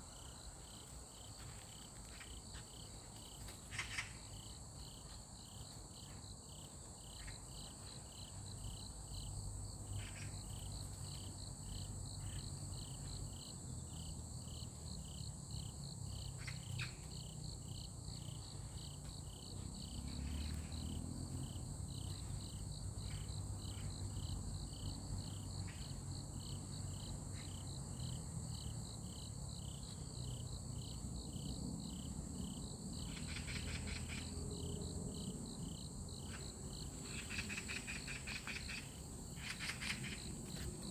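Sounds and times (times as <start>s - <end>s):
insects chirping: 0.0s - 40.9s.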